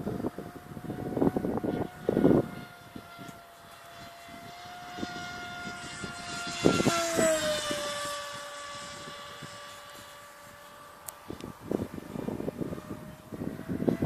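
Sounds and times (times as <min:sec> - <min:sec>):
electric motor whining: 0:00.0 - 0:14.0
wind thumps on microphone: 0:11.2 - 0:14.0.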